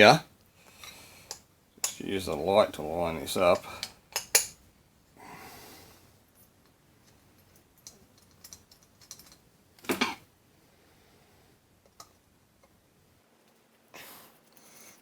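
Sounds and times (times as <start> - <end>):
person breathing: 0.6 - 1.4, 5.2 - 6.2, 10.6 - 11.6, 13.9 - 15.0.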